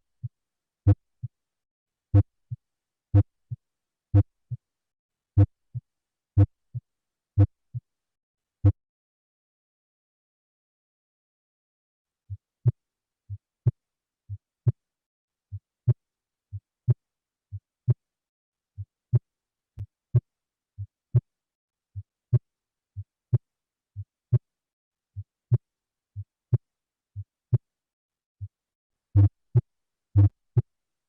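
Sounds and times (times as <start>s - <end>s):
heartbeat through stethoscope: 29.2s - 29.6s, 30.2s - 30.6s.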